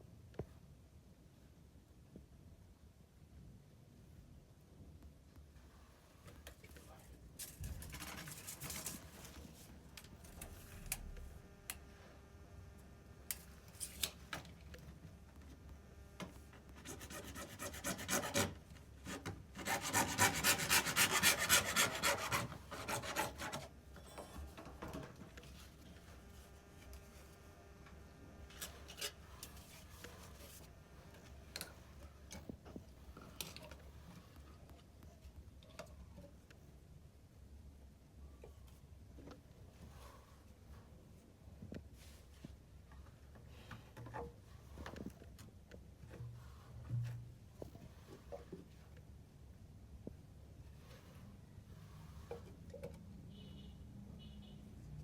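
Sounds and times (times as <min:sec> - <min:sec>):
hand tool rasping on pipe: 0:16.8 - 0:18.6, 0:19.6 - 0:23.7.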